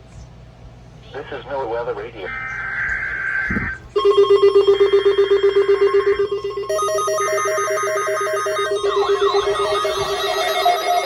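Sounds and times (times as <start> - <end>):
fast beeping: 4.0 - 11.0
pulsing electronic alert tone: 4.0 - 11.0
buzzy digital data bursts: 6.8 - 11.0.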